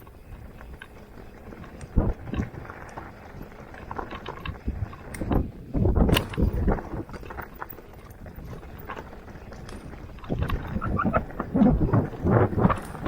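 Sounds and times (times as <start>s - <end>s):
bike clattering and rattling: 0.0s - 13.0s
bike tyres rumbling on dirt: 0.0s - 13.0s.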